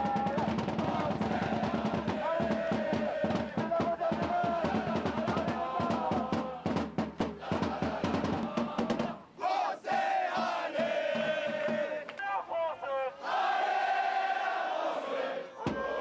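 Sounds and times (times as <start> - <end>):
drum beating: 0.0 - 9.2, 9.9 - 12.2, 15.6 - 16.0
crowd chanting and singing: 0.0 - 16.0.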